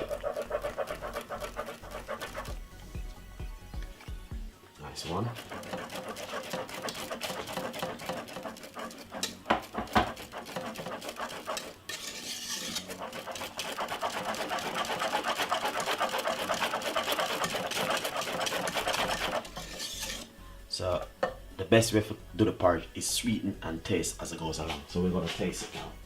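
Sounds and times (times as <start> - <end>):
utensil scraping a pot: 0.0 - 4.2, 4.8 - 21.1, 24.3 - 26.0
loud knocks on a pot: 9.5 - 10.2.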